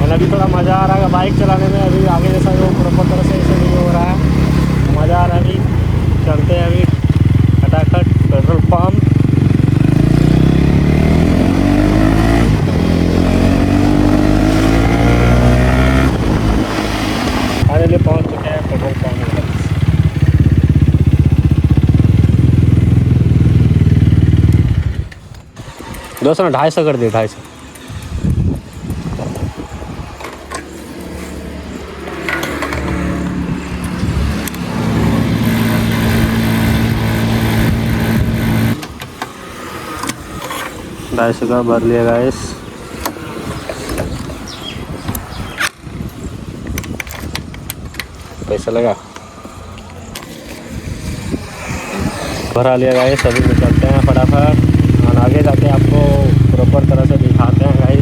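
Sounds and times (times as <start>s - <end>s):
motorcycle engine accelerating: 0.0s - 26.0s, 31.0s - 39.0s, 50.0s - 58.0s
motor humming: 33.8s - 38.9s.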